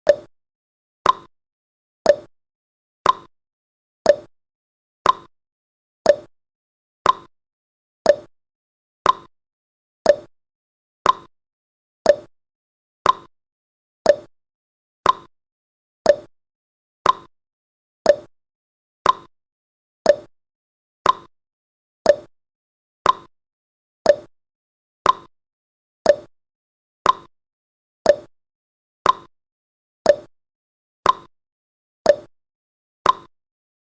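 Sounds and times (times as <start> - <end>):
timer ticking: 0.0 - 0.3, 1.0 - 1.3, 2.1 - 2.3, 3.0 - 3.3, 4.0 - 4.3, 5.0 - 5.3, 6.0 - 6.3, 7.0 - 7.3, 8.1 - 8.3, 9.0 - 9.3, 10.0 - 10.3, 11.0 - 11.3, 12.0 - 12.3, 13.0 - 13.3, 14.0 - 14.3, 15.0 - 15.3, 16.0 - 16.3, 17.0 - 17.3, 18.1 - 18.3, 19.0 - 19.3, 20.1 - 20.3, 21.0 - 21.3, 22.1 - 22.3, 23.0 - 23.3, 24.1 - 24.3, 25.0 - 25.3, 26.0 - 26.3, 27.0 - 27.3, 28.1 - 28.3, 29.0 - 29.3, 30.1 - 30.3, 31.0 - 31.3, 32.1 - 32.3, 33.0 - 33.3.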